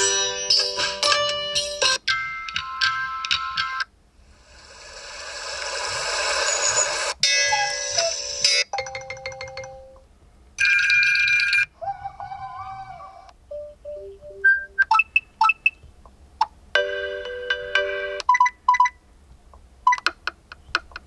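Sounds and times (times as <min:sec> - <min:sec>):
pulsing electronic tones: 0:04.8 - 0:08.3
phone alarm chime: 0:06.4 - 0:09.6.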